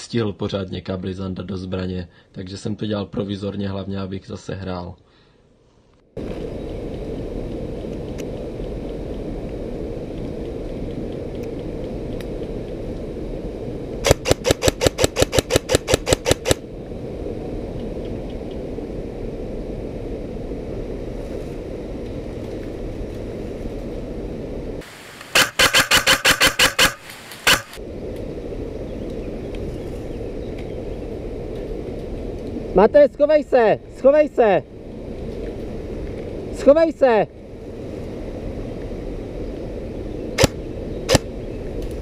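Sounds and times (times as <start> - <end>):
steady rumbling noise: 0.0 - 42.0
airsoft rifle rapid fire: 14.0 - 16.6, 25.3 - 27.8, 40.4 - 41.3.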